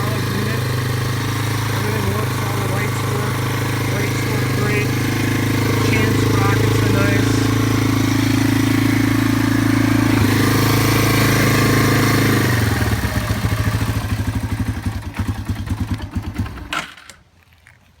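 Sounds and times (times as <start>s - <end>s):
motorcycle engine running: 0.0s - 16.7s.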